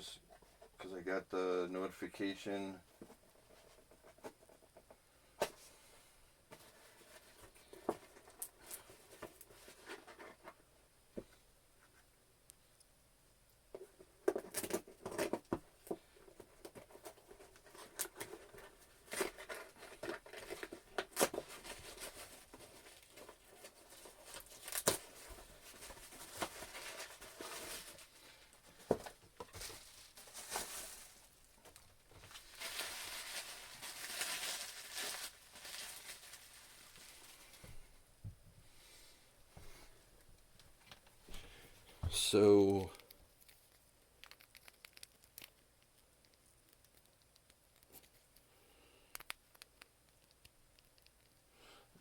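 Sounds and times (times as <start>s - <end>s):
packaging tearing and crinkling: 32.3s - 37.4s.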